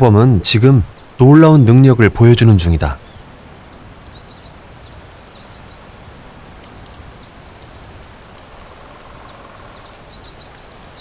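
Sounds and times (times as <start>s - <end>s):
faint forest ambience: 0.0s - 11.0s
songbird singing: 0.0s - 11.0s.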